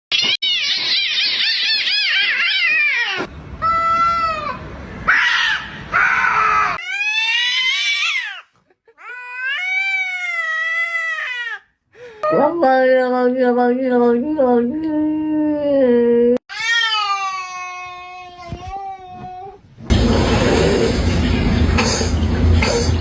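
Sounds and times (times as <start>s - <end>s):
cat yowling and meowing: 0.1s - 8.4s, 9.0s - 11.6s, 16.5s - 19.6s.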